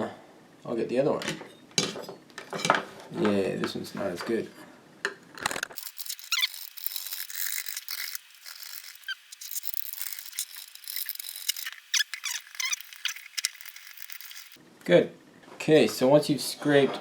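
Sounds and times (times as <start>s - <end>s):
screwdriver scraping circuit board: 5.4s - 14.6s.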